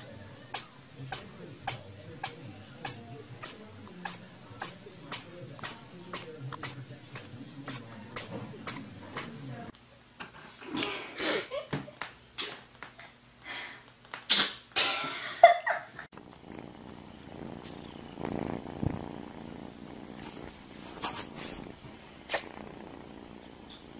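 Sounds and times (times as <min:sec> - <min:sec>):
cat sneezing: 0:00.0 - 0:09.4, 0:14.3 - 0:15.0, 0:22.3 - 0:22.5.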